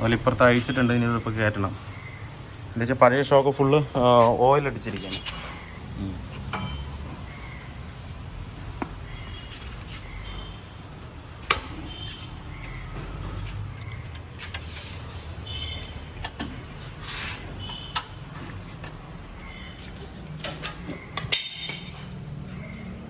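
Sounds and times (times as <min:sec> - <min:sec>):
metallic clinks of tools: 0:20.2 - 0:22.6.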